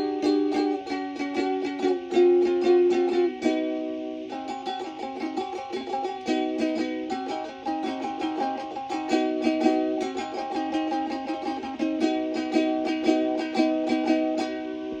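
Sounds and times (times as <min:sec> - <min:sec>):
ukulele picked notes: 0:00.0 - 0:15.0.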